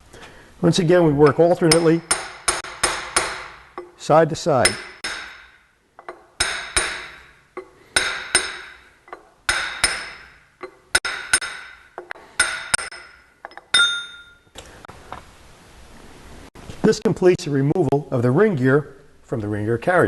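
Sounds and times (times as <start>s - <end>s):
hammer striking metal: 1.2s - 4.0s, 4.6s - 14.4s.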